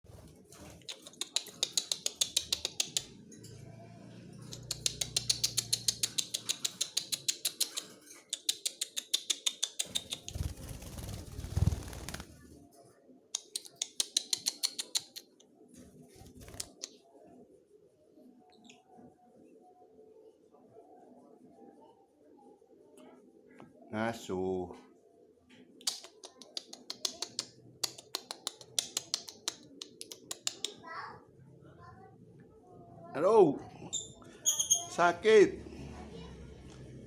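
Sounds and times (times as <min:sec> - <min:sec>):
small bird chirping: 0:00.8 - 0:03.5, 0:04.4 - 0:12.4, 0:18.4 - 0:19.1, 0:33.8 - 0:35.0.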